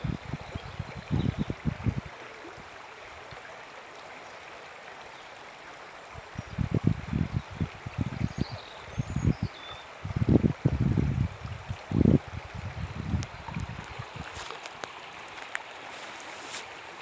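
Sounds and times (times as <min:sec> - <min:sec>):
wind buffeting microphone: 0:00.0 - 0:02.7, 0:06.2 - 0:14.5
river water rushing: 0:11.2 - 0:17.0.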